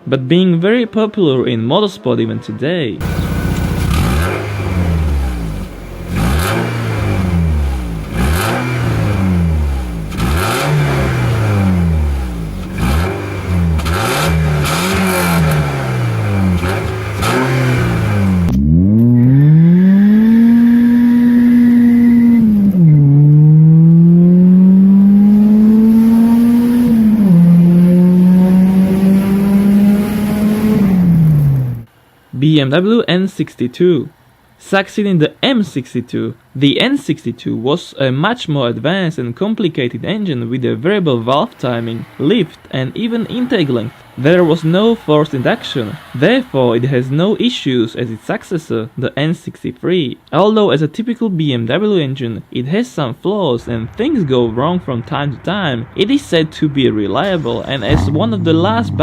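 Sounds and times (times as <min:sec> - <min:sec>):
engine accelerating with upshifts: 0:03.0 - 0:31.9, 0:57.2 - 0:59.0
engine revving: 0:03.0 - 0:31.9, 0:57.2 - 0:59.0.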